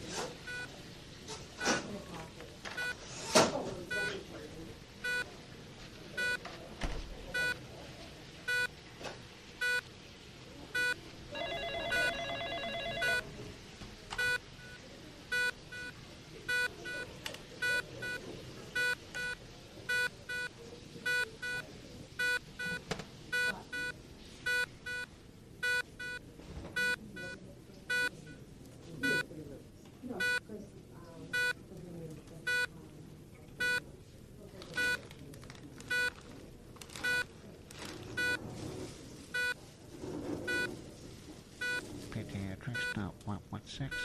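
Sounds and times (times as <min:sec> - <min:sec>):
hospital monitor beeping: 0:00.4 - 0:00.8, 0:02.7 - 0:03.1, 0:03.9 - 0:04.2, 0:05.0 - 0:05.4, 0:06.1 - 0:06.6, 0:07.3 - 0:07.6, 0:08.5 - 0:08.8, 0:09.6 - 0:09.9, 0:10.8 - 0:13.4, 0:14.1 - 0:29.4, 0:30.1 - 0:30.5, 0:31.3 - 0:31.7, 0:32.4 - 0:32.8, 0:33.5 - 0:33.8, 0:34.7 - 0:35.1, 0:35.8 - 0:36.3, 0:36.9 - 0:37.4, 0:38.1 - 0:38.5, 0:39.3 - 0:39.6, 0:40.4 - 0:40.8, 0:41.6 - 0:44.0
telephone ringing trill: 0:11.3 - 0:13.3.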